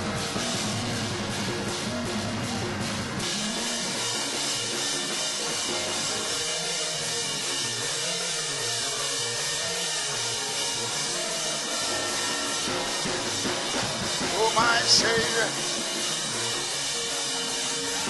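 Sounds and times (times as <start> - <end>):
deep bass: 0.0 - 4.0
praise band with drum kit: 0.0 - 18.0.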